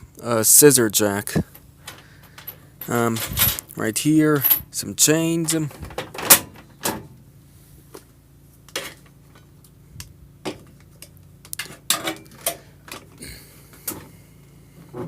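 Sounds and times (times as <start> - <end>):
faint steady hum: 0.0 - 15.0
metal chains clinking: 2.2 - 3.7, 4.3 - 4.8.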